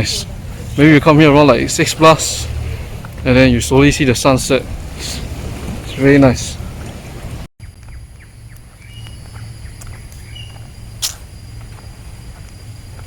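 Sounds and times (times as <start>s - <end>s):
steady low rumble: 0.0s - 13.0s
high bird chirps: 7.6s - 11.9s
sharp click: 11.0s - 11.3s.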